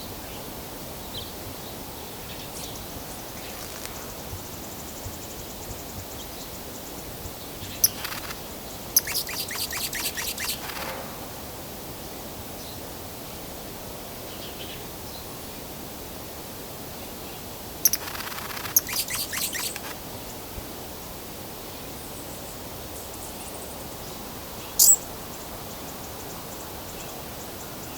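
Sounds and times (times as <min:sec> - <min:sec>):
background hiss: 0:00.1 - 0:27.9
hummingbird chattering chips: 0:07.8 - 0:10.9, 0:17.8 - 0:20.0, 0:24.8 - 0:25.0.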